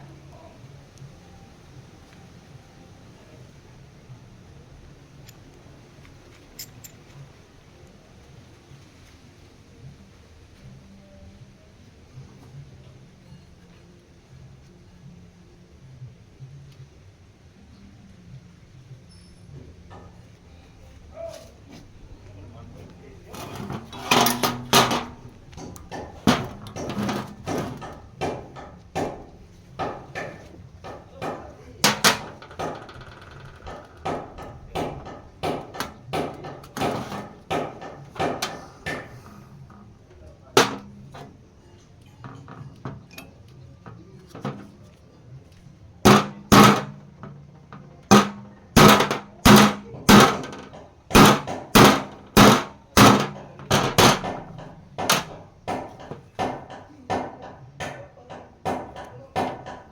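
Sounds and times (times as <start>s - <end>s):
hammer blows on metal: 46.0s - 59.9s.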